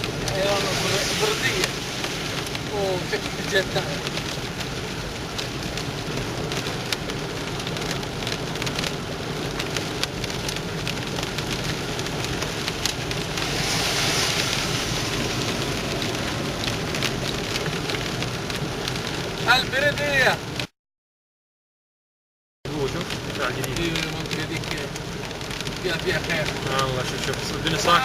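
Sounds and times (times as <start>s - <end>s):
heavy rain hissing: 0.0s - 20.3s
hailstones ticking: 0.0s - 20.7s, 22.7s - 28.0s.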